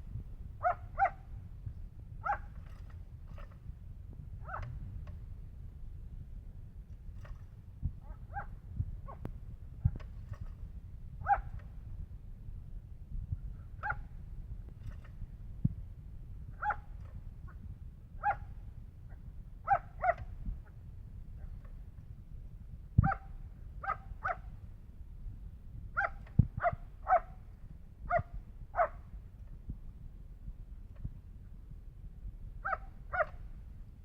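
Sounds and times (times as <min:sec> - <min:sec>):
dog barking and yipping: 0:00.6 - 0:01.2, 0:02.2 - 0:02.6, 0:04.4 - 0:04.7, 0:11.2 - 0:11.6, 0:13.8 - 0:14.0, 0:16.6 - 0:16.8, 0:18.2 - 0:18.5, 0:19.7 - 0:20.2, 0:26.0 - 0:27.3, 0:28.1 - 0:29.0, 0:32.6 - 0:33.4.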